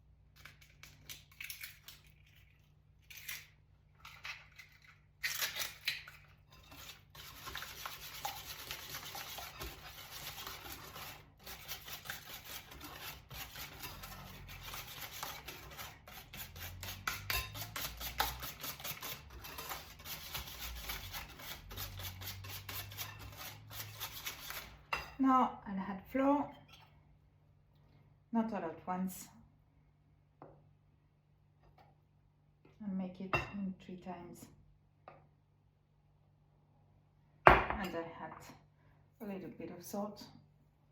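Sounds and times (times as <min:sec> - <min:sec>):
wire whisk beating batter in bowl: 0:06.6 - 0:24.8.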